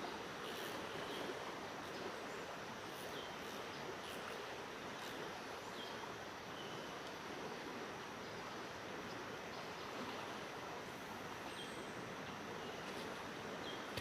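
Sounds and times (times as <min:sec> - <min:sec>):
river water rushing: 0:00.0 - 0:14.0.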